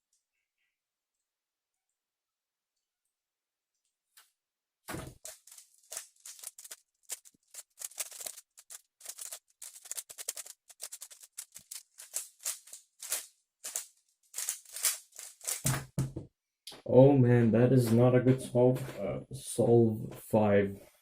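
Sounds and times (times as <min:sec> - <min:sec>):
speedcube layers clicking: 0:05.9 - 0:15.7.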